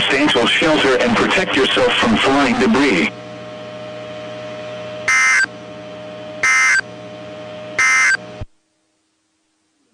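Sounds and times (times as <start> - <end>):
steady radio hum: 0.0 - 3.4, 5.0 - 5.5, 6.4 - 6.9, 7.8 - 8.3
screeching digital data bursts: 5.1 - 5.5, 6.4 - 6.8, 7.8 - 8.2.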